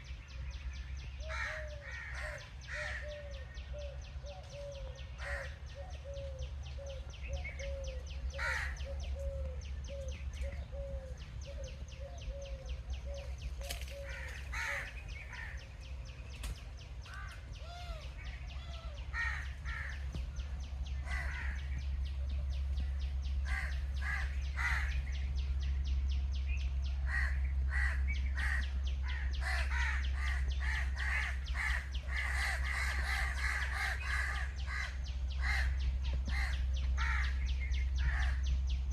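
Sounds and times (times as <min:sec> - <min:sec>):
low repeated bird notes: 0:00.0 - 0:38.9
steady low rumble: 0:00.0 - 0:38.9
crows cawing: 0:01.2 - 0:03.9, 0:04.6 - 0:06.2, 0:07.6 - 0:09.4, 0:13.7 - 0:15.7, 0:17.1 - 0:20.2, 0:21.0 - 0:21.8, 0:23.4 - 0:25.2, 0:27.0 - 0:37.4, 0:38.0 - 0:38.4.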